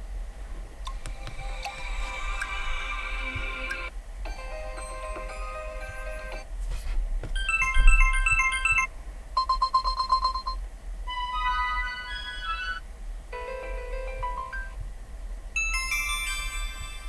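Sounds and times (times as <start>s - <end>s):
electronic ringtone tunes: 1.4s - 6.4s, 7.4s - 12.8s, 13.4s - 14.8s, 15.6s - 17.0s
rapid beeps on one pitch: 7.5s - 10.6s.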